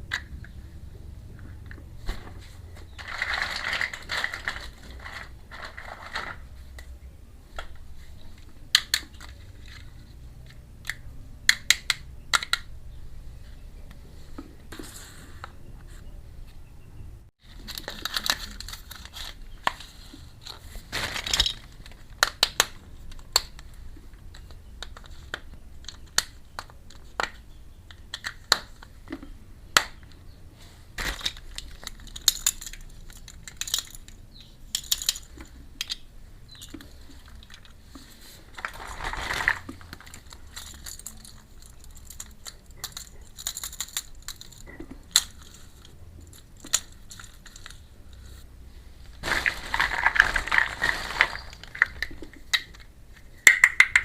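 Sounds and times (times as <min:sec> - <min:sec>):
packaging crinkling: 0:02.9 - 0:06.5, 0:36.9 - 0:45.7, 0:49.1 - 0:52.4
toy pieces clicking and tapping: 0:08.7 - 0:09.9, 0:10.8 - 0:12.7, 0:24.2 - 0:28.9, 0:31.3 - 0:37.7, 0:39.9 - 0:47.8, 0:51.6 - 0:54.0.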